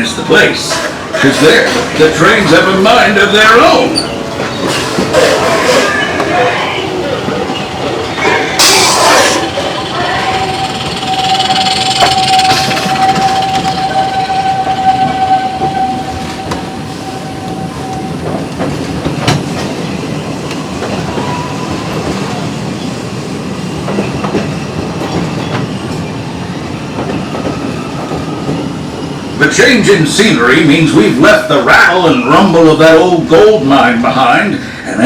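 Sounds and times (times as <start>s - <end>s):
steam train running on track: 0.0s - 35.0s
high-pitched squeal: 7.6s - 18.5s.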